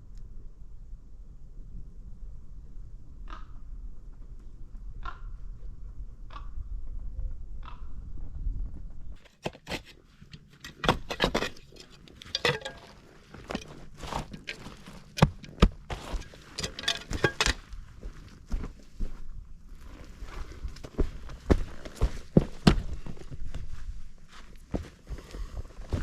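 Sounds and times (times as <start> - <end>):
light knocks and clinks: 10.4 - 17.6.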